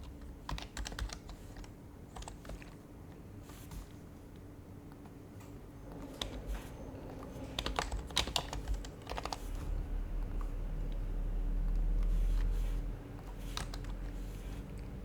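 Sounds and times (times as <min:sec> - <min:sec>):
keyboard typing: 0:00.0 - 0:02.8, 0:04.9 - 0:15.0.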